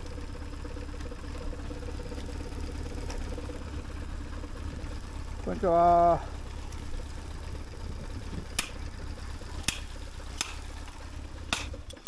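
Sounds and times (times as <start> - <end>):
motorcycle engine idling: 0.0 - 12.0
sharp clicks: 8.6 - 8.8.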